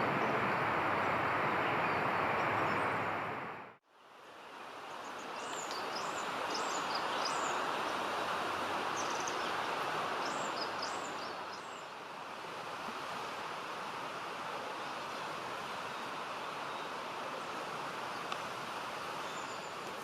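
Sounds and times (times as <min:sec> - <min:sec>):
songbird singing: 0:00.0 - 0:03.1, 0:04.4 - 0:08.1, 0:08.9 - 0:12.0, 0:15.8 - 0:18.4, 0:19.1 - 0:20.0.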